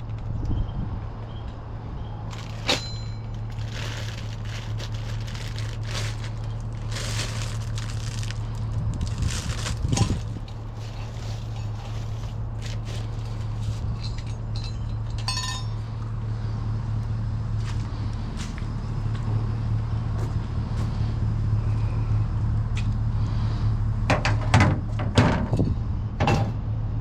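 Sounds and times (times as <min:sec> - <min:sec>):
vehicle engine running: 0:00.0 - 0:27.0
metallic clinks: 0:14.0 - 0:15.8.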